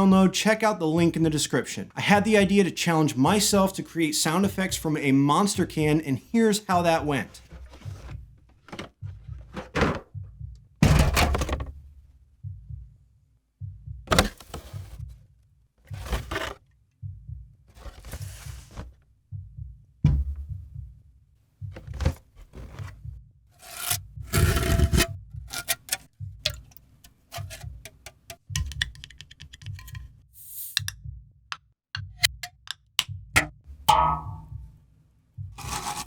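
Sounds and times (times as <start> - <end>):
aluminium can crushing: 23.6 - 30.0, 35.6 - 36.0.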